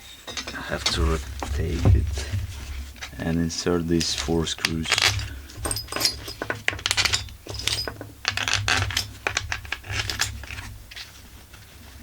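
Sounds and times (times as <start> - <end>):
low steady hum: 0.3 - 12.0
small metal screws clinking: 3.0 - 11.1.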